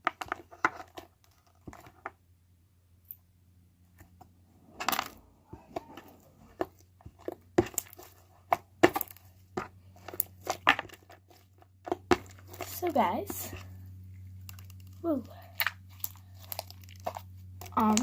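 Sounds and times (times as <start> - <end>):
slime rustling: 4.6 - 18.0.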